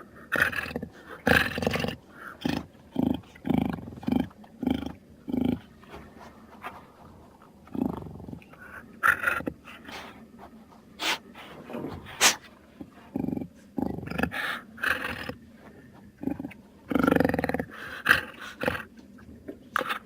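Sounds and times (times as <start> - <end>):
sharp hissing breaths: 9.8 - 10.2, 11.0 - 12.5.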